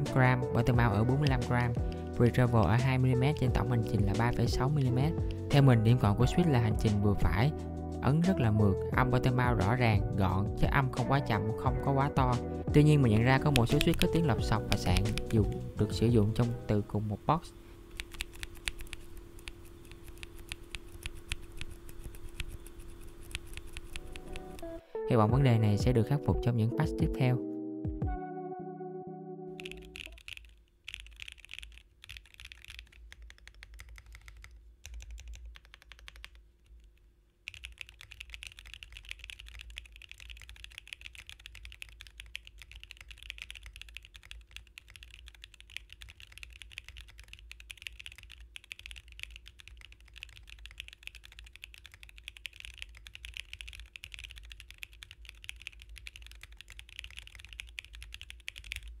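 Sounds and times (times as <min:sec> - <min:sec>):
typing on mechanical keyboard: 0:12.9 - 0:15.7, 0:17.9 - 0:24.8, 0:29.6 - 0:59.0.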